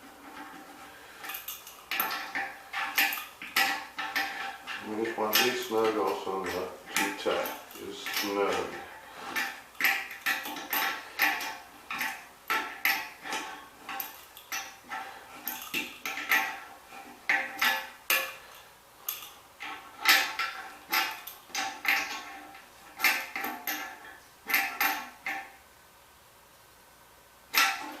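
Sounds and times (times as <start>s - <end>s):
metallic clinks: 1.2s - 13.0s
ratcheting wrench clicking: 1.2s - 16.7s.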